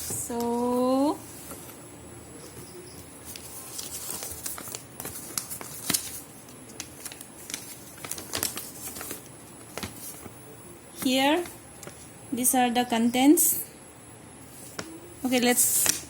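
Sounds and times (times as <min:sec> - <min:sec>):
packaging crinkling: 0:03.2 - 0:10.4.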